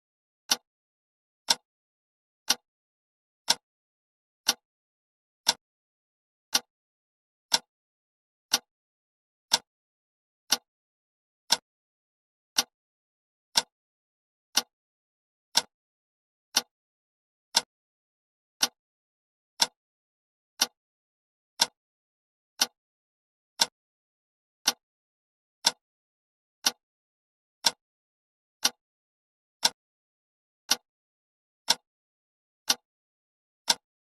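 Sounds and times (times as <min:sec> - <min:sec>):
clock ticking: 0:00.5 - 0:00.7, 0:04.4 - 0:04.6, 0:05.4 - 0:05.6, 0:06.5 - 0:06.7, 0:11.5 - 0:11.7, 0:12.5 - 0:12.7, 0:13.5 - 0:13.7, 0:17.5 - 0:17.7, 0:18.6 - 0:18.8, 0:19.6 - 0:19.8, 0:24.6 - 0:24.8, 0:25.6 - 0:25.8, 0:28.6 - 0:28.8, 0:29.6 - 0:29.8, 0:30.6 - 0:30.9, 0:31.6 - 0:31.8.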